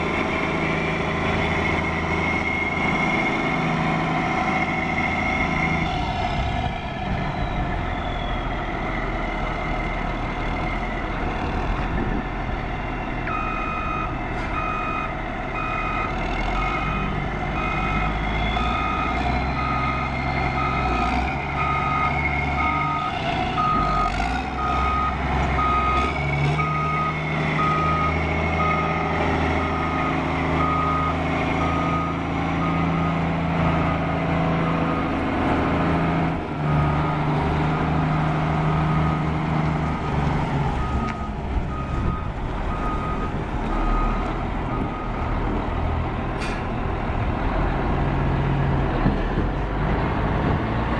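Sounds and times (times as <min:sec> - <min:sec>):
diesel engine running: 0:00.0 - 0:50.9
backup alarm beeping: 0:13.3 - 0:21.0.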